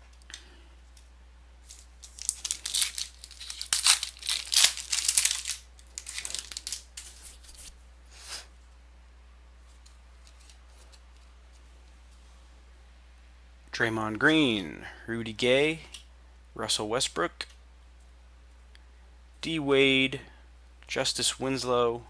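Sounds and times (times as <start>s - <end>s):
wrapper ripping and rustling: 1.7s - 7.7s.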